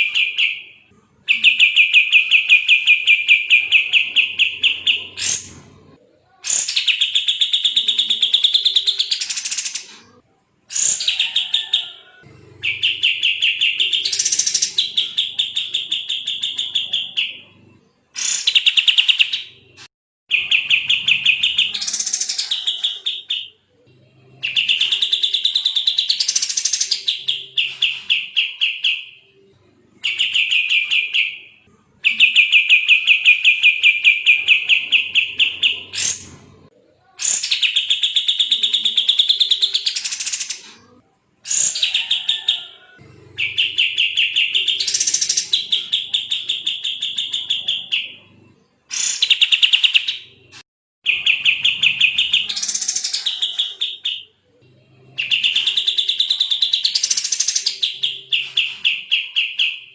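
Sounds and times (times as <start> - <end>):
bulbul singing rapid chirps: 12.5 - 17.5, 24.3 - 29.4, 43.2 - 54.3, 54.9 - 59.9.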